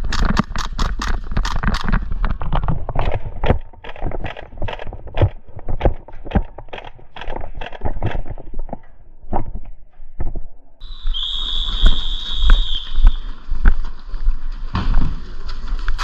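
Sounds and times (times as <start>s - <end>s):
footsteps on rough ground: 0.0s - 16.0s
rustling: 11.0s - 16.0s.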